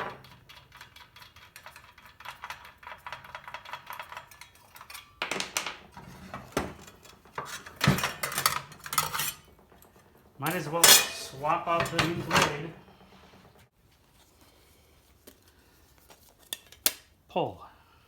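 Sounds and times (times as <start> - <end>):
metal tools clinking and clattering: 1.6 - 13.6.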